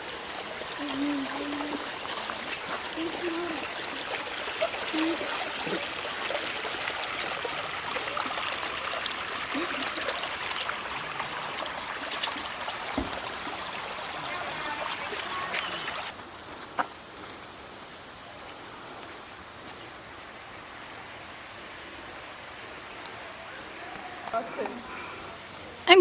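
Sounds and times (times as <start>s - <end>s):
water rushing over rocks: 0.0s - 16.2s.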